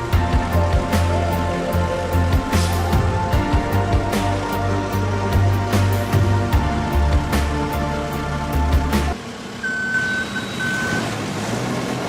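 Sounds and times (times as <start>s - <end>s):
heavy bass line: 0.0s - 9.2s.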